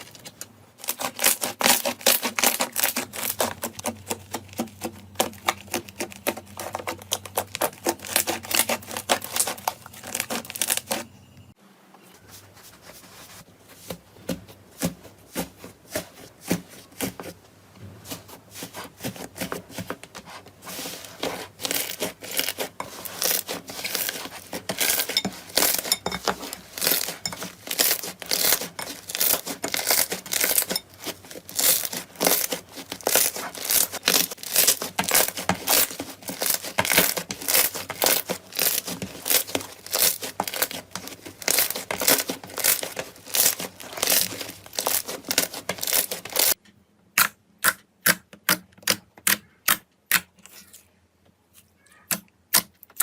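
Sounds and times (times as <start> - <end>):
slime crackling and popping: 0.9 - 11.0, 21.7 - 46.6.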